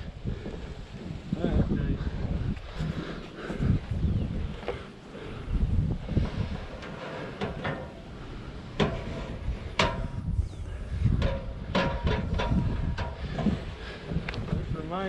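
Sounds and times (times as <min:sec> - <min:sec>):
wind rumble on microphone: 0:00.0 - 0:15.0
construction knocks and clunks: 0:06.1 - 0:14.7.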